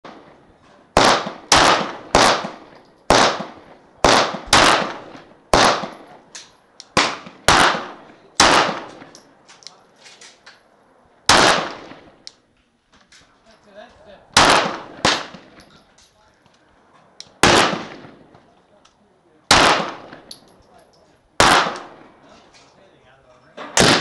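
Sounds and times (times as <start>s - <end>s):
pistol shots echoing: 1.0s - 9.2s, 11.3s - 12.2s, 14.3s - 15.6s, 17.2s - 18.4s, 19.5s - 20.5s, 21.4s - 22.1s, 23.7s - 24.0s.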